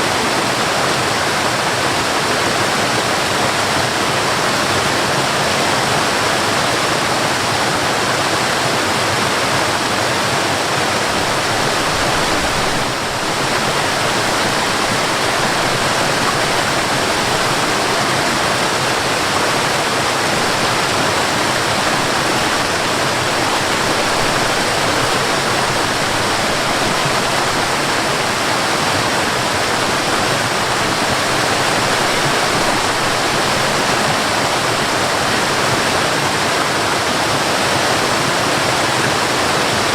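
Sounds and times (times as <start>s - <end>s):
waterfall pouring: 9.2s - 39.9s.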